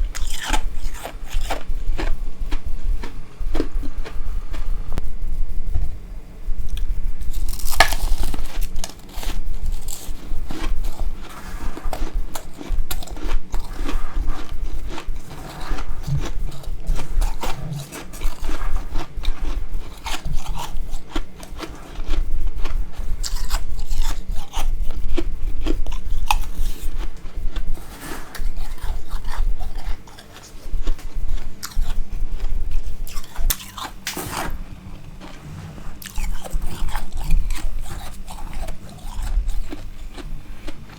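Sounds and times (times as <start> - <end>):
chewing: 0.0 - 5.0, 6.7 - 40.9
frost crunching when bitten: 0.1 - 4.7, 6.7 - 27.7, 28.3 - 34.6, 36.0 - 40.9.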